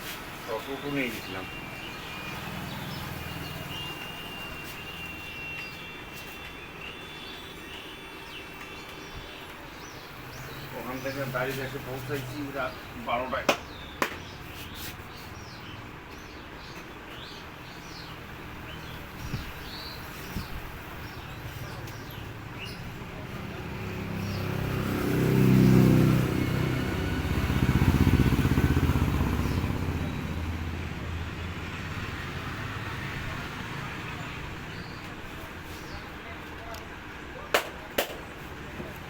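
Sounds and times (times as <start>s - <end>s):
small birds chirping: 0.0s - 37.5s
vehicle engine passing by: 23.1s - 34.9s.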